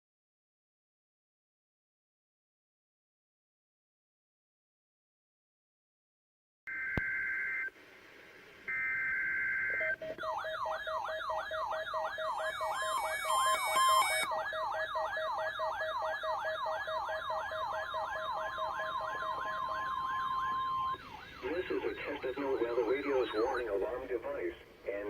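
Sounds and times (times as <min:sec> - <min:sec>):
electronic beeps: 0:08.7 - 0:24.0
siren sweep over steady tone: 0:08.7 - 0:24.2
warbling digital header tones: 0:09.4 - 0:24.2.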